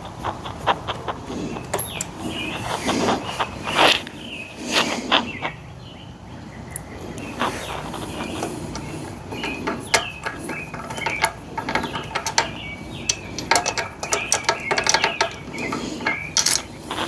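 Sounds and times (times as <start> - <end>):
bird chirps: 1.4 - 17.0
metallic clicks of hand tools: 8.4 - 16.8.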